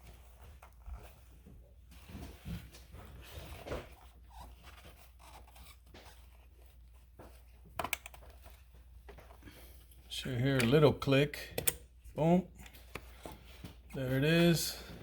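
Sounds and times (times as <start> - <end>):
hands scraping and rustling hose: 0.0 - 10.9, 12.1 - 15.0
plastic fitting clicking: 11.6 - 11.8.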